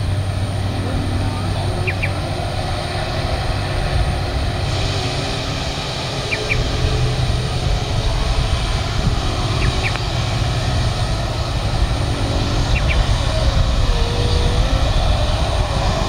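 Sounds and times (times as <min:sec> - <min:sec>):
aircraft engines rumbling: 0:00.0 - 0:16.0
high double chirp: 0:00.6 - 0:03.7, 0:12.1 - 0:15.1.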